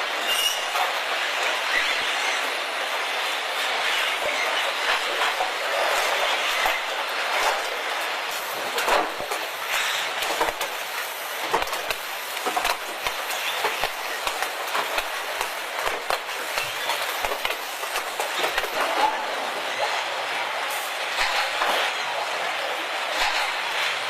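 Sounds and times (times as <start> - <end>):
machine rattling hiss: 0.1 - 18.8.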